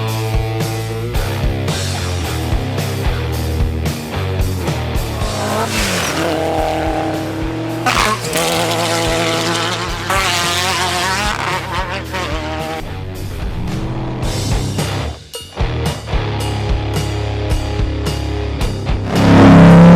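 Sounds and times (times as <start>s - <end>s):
engine revving hard: 4.7s - 12.8s, 19.0s - 19.9s.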